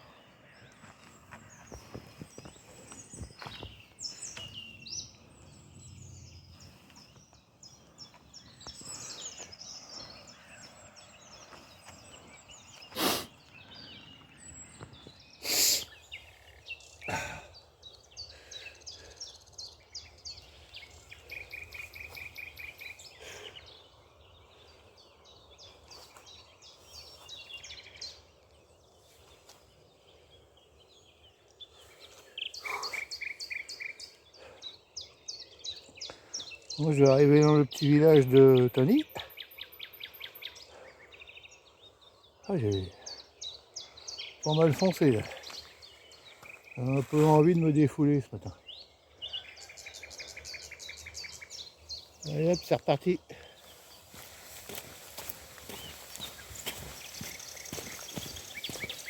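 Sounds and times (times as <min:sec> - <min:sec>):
small birds chirping: 0:00.0 - 0:59.0.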